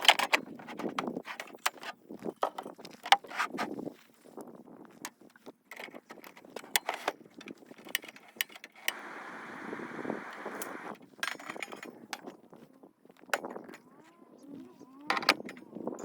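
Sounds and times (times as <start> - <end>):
steady hiss: 8.9 - 11.0.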